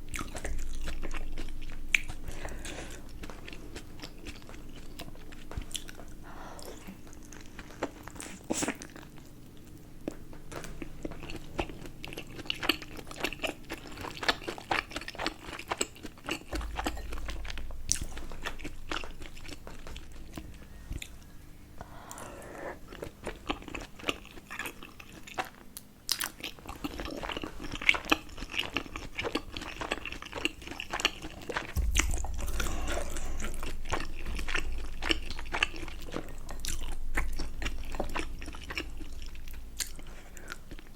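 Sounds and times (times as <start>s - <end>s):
person chewing food: 0.0s - 40.9s
low rumble: 16.6s - 21.8s, 31.8s - 40.9s.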